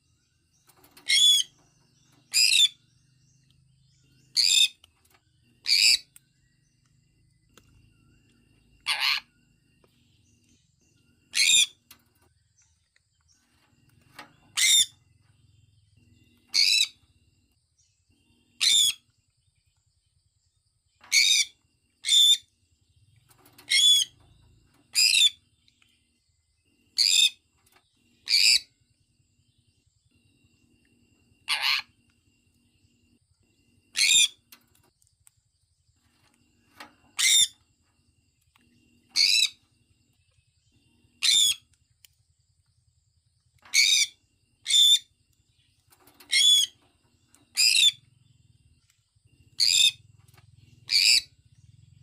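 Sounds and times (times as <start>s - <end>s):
parrot chirping: 1.0s - 1.6s, 2.3s - 2.8s, 5.6s - 6.2s, 8.8s - 9.3s, 11.3s - 11.8s, 14.5s - 15.0s, 16.5s - 17.0s, 18.6s - 19.0s, 23.6s - 24.2s, 28.2s - 28.7s, 31.5s - 31.9s, 33.9s - 34.4s, 37.2s - 37.6s, 39.1s - 39.6s, 41.2s - 41.7s, 43.7s - 45.1s, 46.3s - 46.8s, 47.5s - 48.0s, 49.6s - 50.0s, 50.9s - 51.3s.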